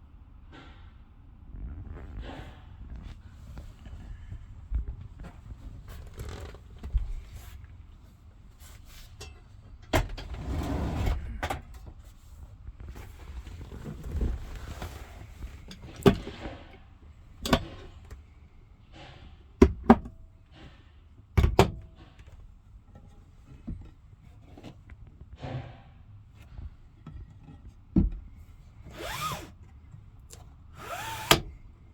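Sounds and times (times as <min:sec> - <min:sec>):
knocks and clicks of handwork: 0:19.6 - 0:20.7, 0:21.4 - 0:22.4, 0:26.5 - 0:29.6, 0:30.3 - 0:31.6.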